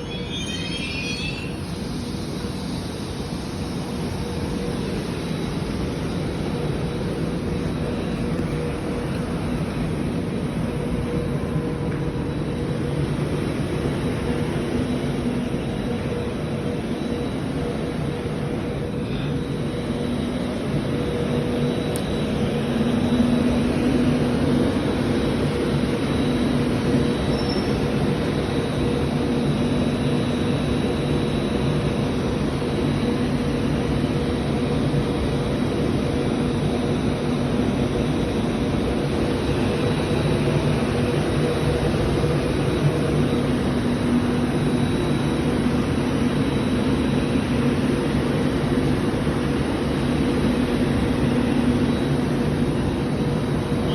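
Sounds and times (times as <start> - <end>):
train rumbling past: 0.0 - 31.8.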